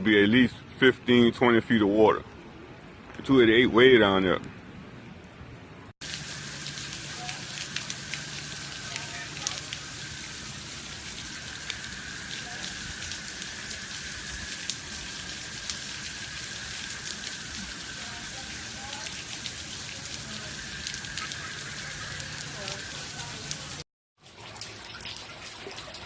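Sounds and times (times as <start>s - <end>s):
raindrop ticks: 6.0s - 23.8s
steady rain falling: 6.0s - 26.0s.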